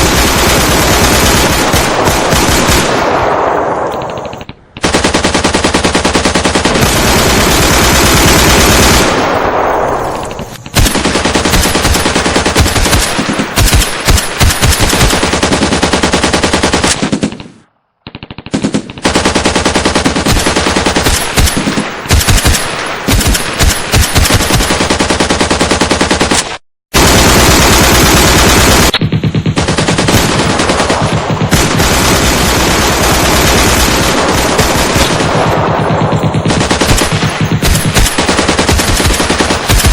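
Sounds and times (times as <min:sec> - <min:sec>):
automatic gunfire bursts: 0:00.0 - 0:17.5, 0:18.1 - 0:39.9.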